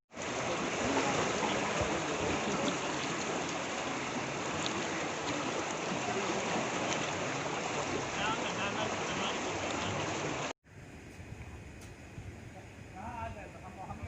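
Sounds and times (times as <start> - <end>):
fast-flowing river water rushing: 0.1 - 10.5.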